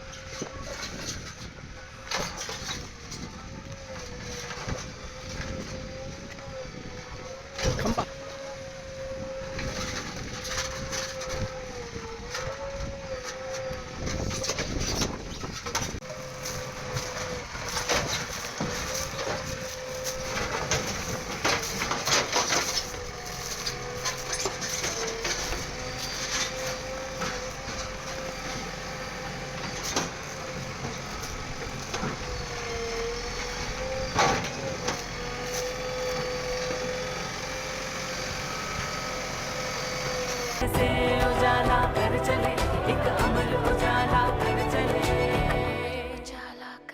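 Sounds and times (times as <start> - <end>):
bulldozer engine whine: 0.0 - 46.4
demolition debris crunching: 9.6 - 38.8.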